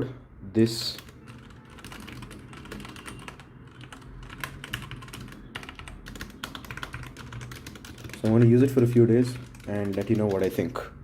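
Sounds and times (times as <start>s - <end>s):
mechanical keyboard typing: 0.8s - 10.8s.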